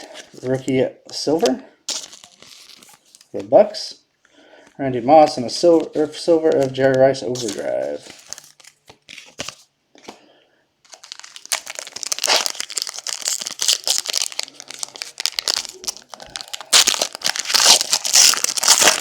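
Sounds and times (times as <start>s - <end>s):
plastic wrappers crinkling and tearing: 1.4s - 3.5s, 5.6s - 9.7s, 10.9s - 19.0s.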